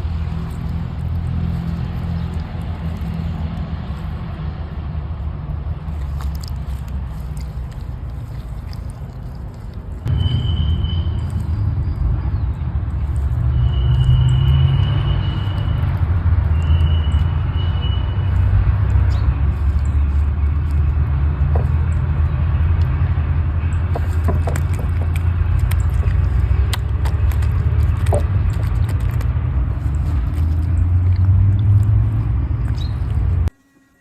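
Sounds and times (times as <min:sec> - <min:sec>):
steady low rumble: 0:00.0 - 0:33.5.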